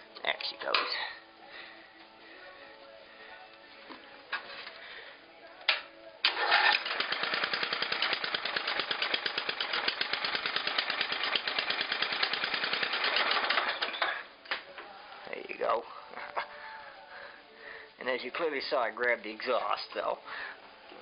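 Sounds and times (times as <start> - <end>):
engine cranking: 6.3 - 14.2
mower engine popping: 6.3 - 14.2.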